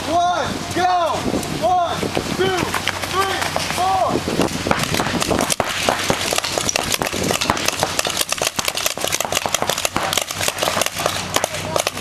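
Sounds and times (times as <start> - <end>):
paintball markers firing: 4.7 - 12.0.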